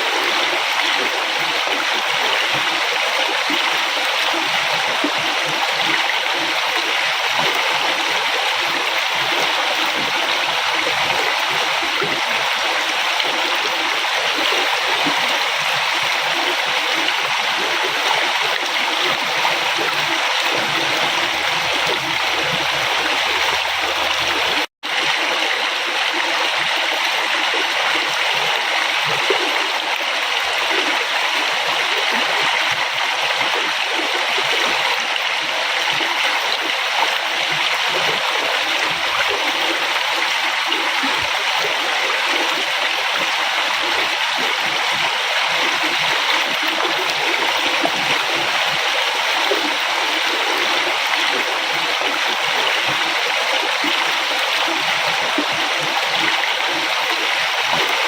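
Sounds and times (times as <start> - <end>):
river water rushing: 18.2 - 24.7.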